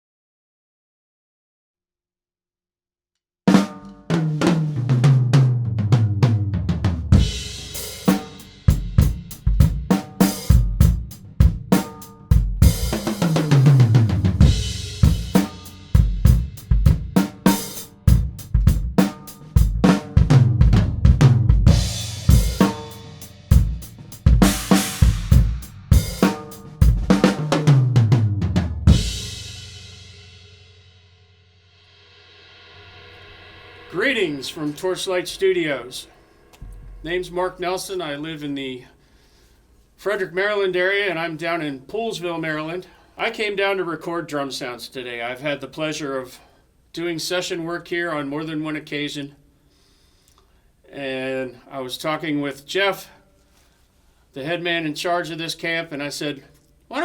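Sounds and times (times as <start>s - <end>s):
tom fills: 3.5s - 30.4s, 32.6s - 39.9s
drum kit groove: 3.5s - 31.0s, 32.1s - 38.6s
cymbal crashes: 7.2s - 10.6s, 14.4s - 18.2s, 21.7s - 26.8s, 29.0s - 38.0s.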